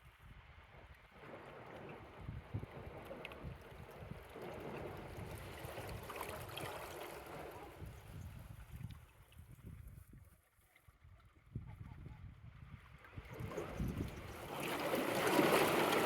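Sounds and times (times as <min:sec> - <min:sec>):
wind buffeting microphone: 0:00.0 - 0:10.3, 0:11.4 - 0:16.0
waves lapping over rocks: 0:02.9 - 0:07.9, 0:13.6 - 0:16.0.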